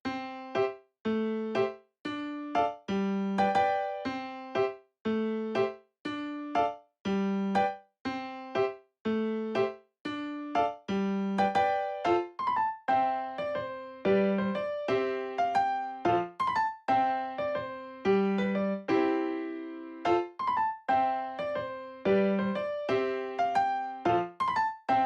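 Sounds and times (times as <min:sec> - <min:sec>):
light piano melody: 0:00.0 - 0:25.0.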